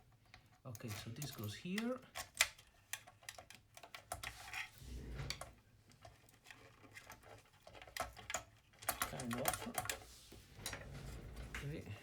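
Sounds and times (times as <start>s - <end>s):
soft handling rustle: 5.8s - 12.0s.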